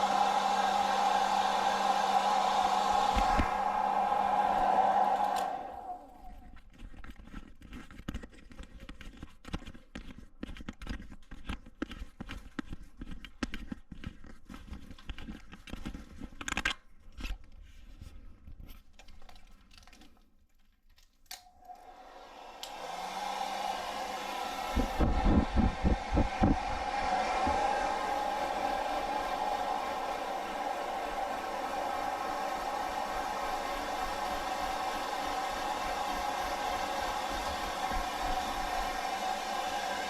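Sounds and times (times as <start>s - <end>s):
hair dryer blowing: 0.0s - 6.5s, 21.4s - 40.0s.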